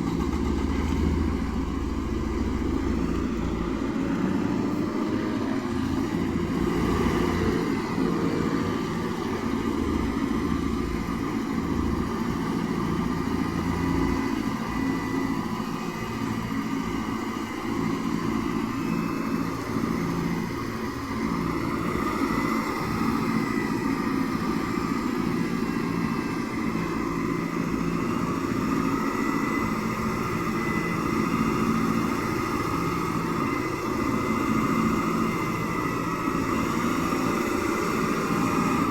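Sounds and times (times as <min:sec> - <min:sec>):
truck engines idling: 0:00.0 - 0:12.2.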